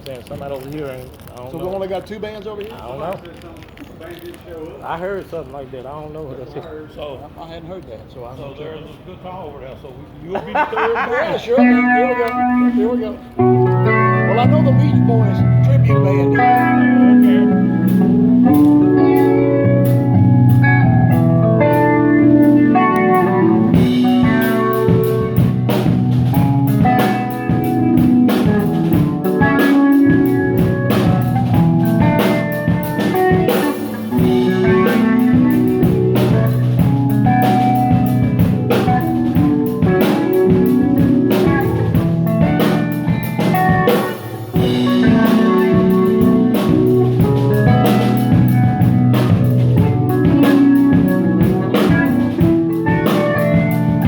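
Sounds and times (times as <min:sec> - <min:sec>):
guitar: 0:00.0 - 0:05.7, 0:11.3 - 0:54.0
drum kit: 0:11.6 - 0:54.0.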